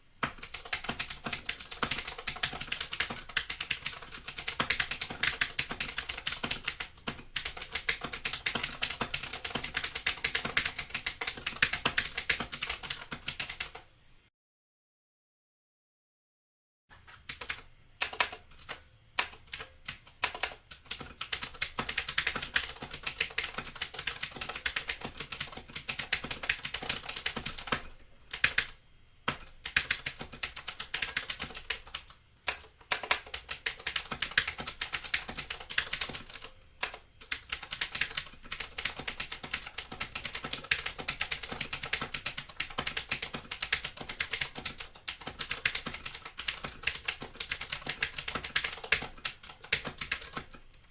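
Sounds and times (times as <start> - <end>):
mechanical keyboard typing: 0.2 - 13.8, 17.0 - 50.9.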